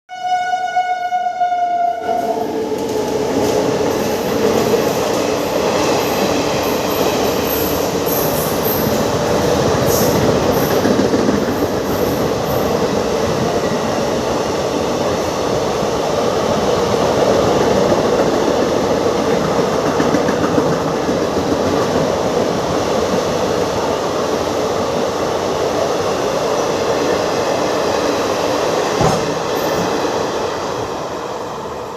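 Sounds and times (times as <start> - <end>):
train horn: 0.1 - 2.5
train wheels rattling over rails: 2.3 - 31.3.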